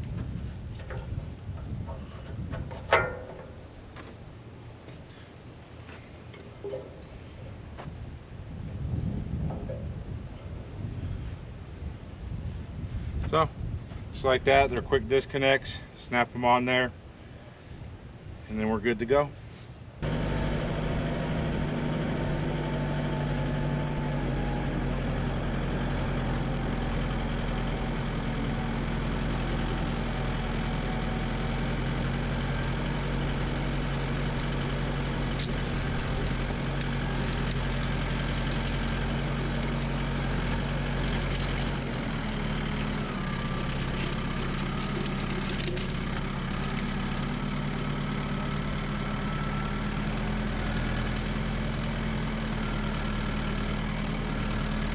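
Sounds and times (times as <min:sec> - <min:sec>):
tractor diesel engine running: 0:20.0 - 0:54.9.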